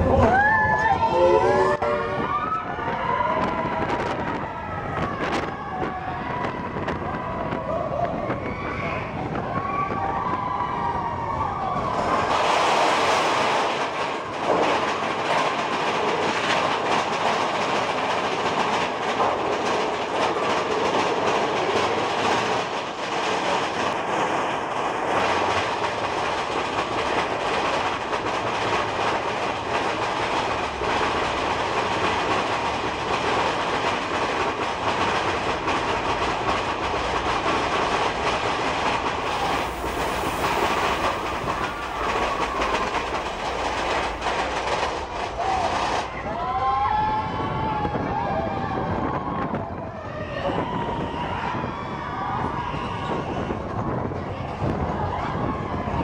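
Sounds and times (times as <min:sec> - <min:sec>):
roller coaster cars rattling on rails: 0:00.0 - 0:56.0
rushing noise: 0:10.7 - 0:48.1.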